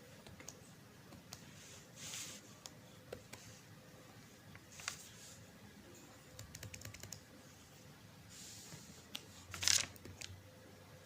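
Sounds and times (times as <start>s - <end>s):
computer keyboard typing: 6.3s - 7.2s.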